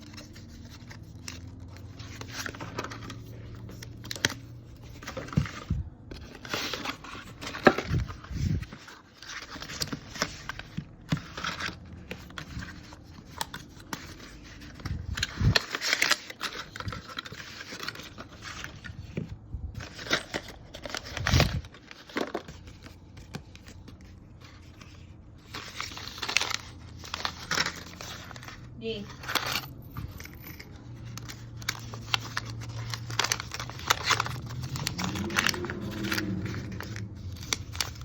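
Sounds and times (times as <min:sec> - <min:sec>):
packaging tearing and crinkling: 0:19.8 - 0:22.6, 0:25.4 - 0:28.6, 0:30.6 - 0:38.0
low hum: 0:32.4 - 0:38.0.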